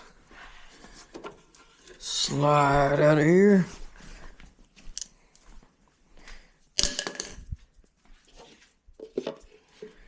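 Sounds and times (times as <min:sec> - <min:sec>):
clicks and knocks of hard objects: 0:06.8 - 0:07.6.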